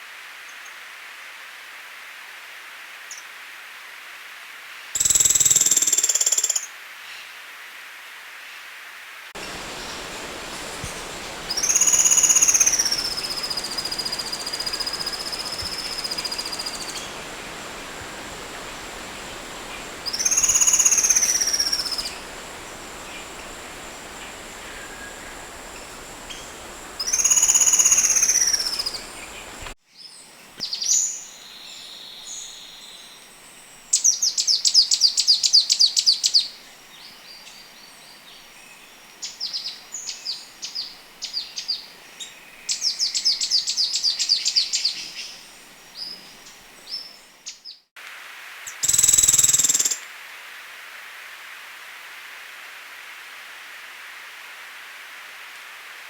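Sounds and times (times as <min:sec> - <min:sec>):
hissy background: 0:00.0 - 0:56.0
bird whistled song: 0:05.0 - 0:06.7, 0:10.8 - 0:29.7, 0:48.8 - 0:50.0
bird sharp chirps: 0:09.8 - 0:29.7, 0:48.8 - 0:50.0
bird rattling trill: 0:10.2 - 0:29.2.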